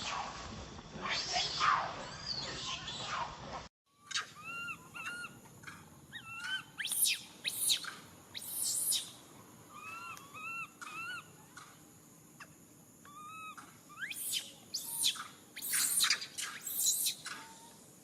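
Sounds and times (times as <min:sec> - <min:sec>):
baby monkey crying: 0:04.0 - 0:05.4, 0:09.7 - 0:11.3.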